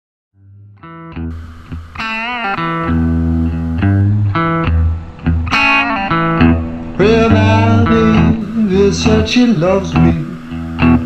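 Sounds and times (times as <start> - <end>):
blues guitar with bent notes: 0.4 - 11.0
bass line: 1.0 - 11.0.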